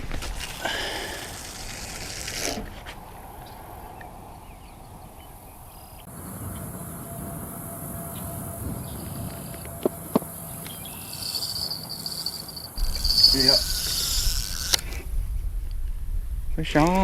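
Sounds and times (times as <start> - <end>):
high-pitched insect drone: 6.4 - 14.8
handling rustling: 11.1 - 15.0.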